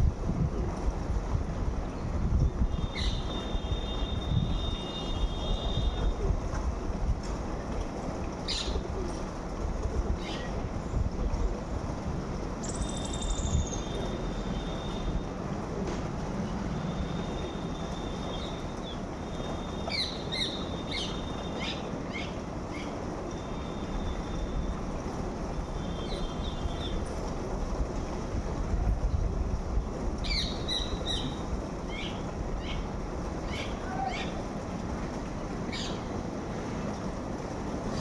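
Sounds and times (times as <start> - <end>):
birds chirping: 2.8 - 4.0, 17.3 - 24.3, 30.2 - 32.9, 35.7 - 36.2.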